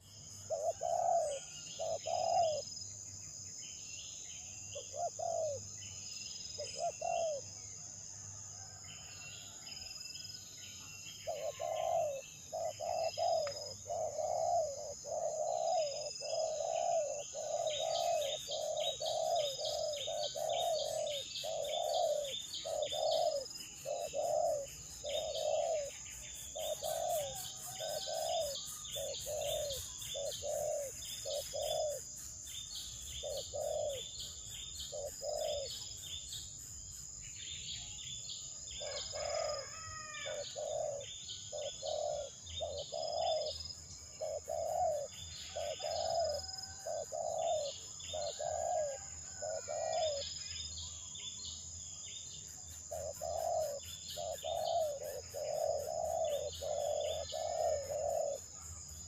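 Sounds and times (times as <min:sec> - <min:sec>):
small birds chirping: 0:00.0 - 0:08.0, 0:08.6 - 0:59.0
high-pitched insect whine: 0:11.2 - 0:50.6, 0:51.2 - 0:59.0.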